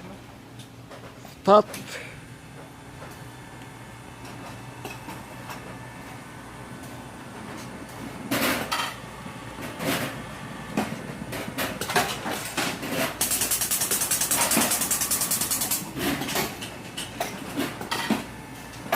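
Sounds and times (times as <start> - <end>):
packing machine humming: 0.1 - 18.9
machine clattering knocks: 10.8 - 16.6.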